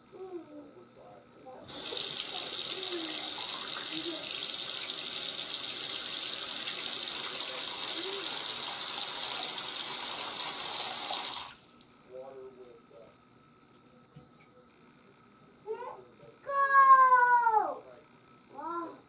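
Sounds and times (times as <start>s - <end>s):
faucet running into sink: 1.7s - 11.6s.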